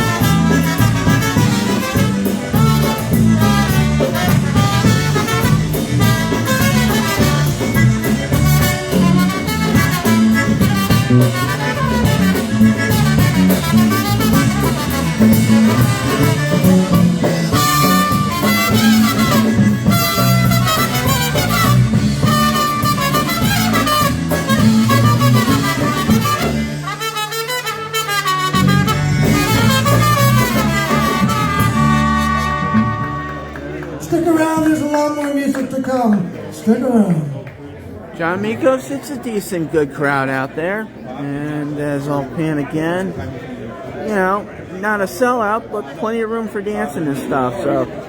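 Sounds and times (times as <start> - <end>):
live polka band music: 0.0 - 48.0.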